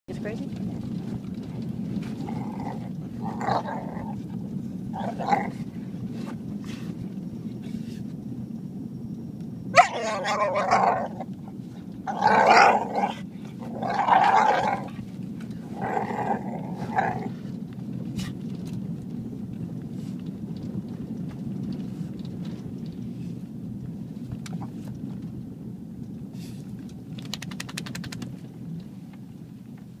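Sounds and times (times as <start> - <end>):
steady low hum: 0.1 - 30.0
dog grumbling calls: 1.8 - 5.9, 9.8 - 17.5.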